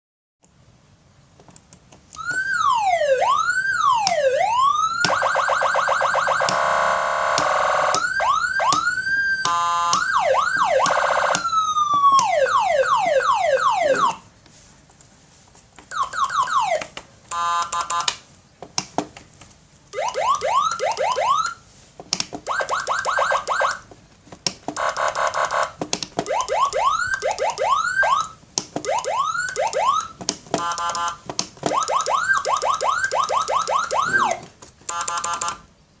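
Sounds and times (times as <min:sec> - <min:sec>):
electronic siren wailing and whooping: 0:02.2 - 0:14.2, 0:15.9 - 0:18.1, 0:20.0 - 0:21.6, 0:22.5 - 0:23.8, 0:26.3 - 0:35.5
sharp clicks: 0:15.9 - 0:21.2.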